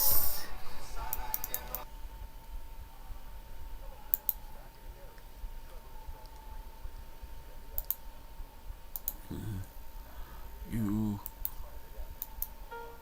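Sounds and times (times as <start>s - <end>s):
faint steady tone: 1.6s - 13.0s
sharp clicks: 7.8s - 8.0s.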